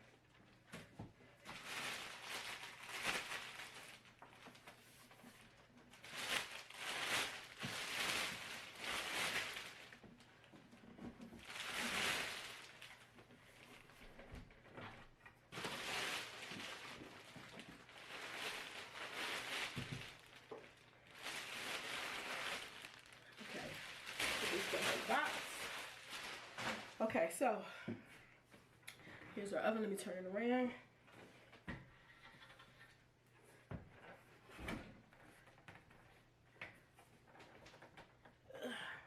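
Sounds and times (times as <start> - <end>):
packaging rustling and scraping: 1.4 - 14.2, 15.5 - 27.1.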